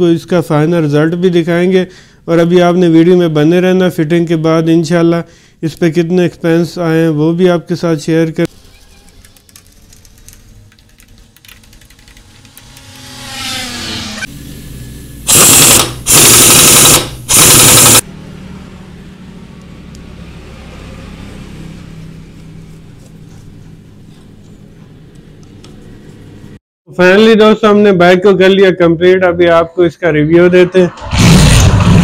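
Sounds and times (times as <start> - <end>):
steady low hum: 10.8 - 15.3
power tool bursts: 15.2 - 18.1.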